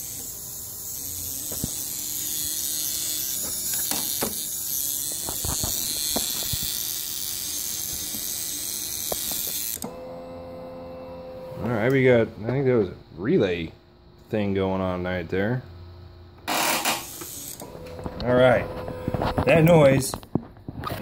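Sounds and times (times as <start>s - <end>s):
electrical relay buzzing: 0.0s - 12.2s, 16.4s - 20.2s.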